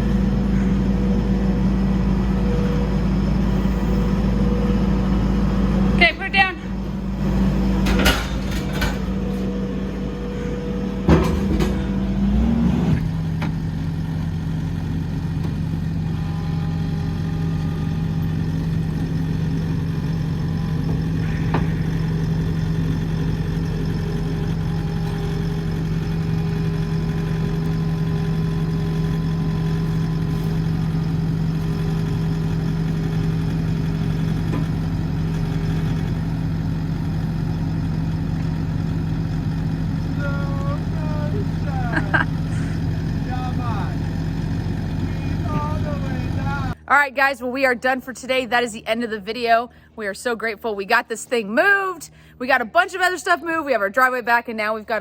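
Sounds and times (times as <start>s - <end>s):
skid steer engine running: 0.0s - 54.2s
sharp clanks: 7.1s - 13.6s.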